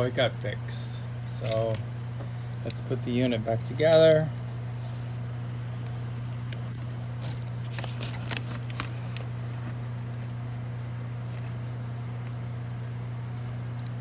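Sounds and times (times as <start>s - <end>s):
steady low hum: 0.0s - 14.0s
plastic parts clicking and rustling: 6.7s - 9.7s.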